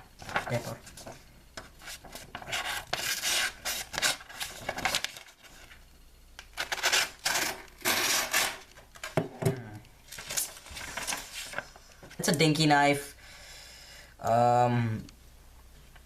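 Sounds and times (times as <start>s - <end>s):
knife cutting paper: 6.6s - 8.6s.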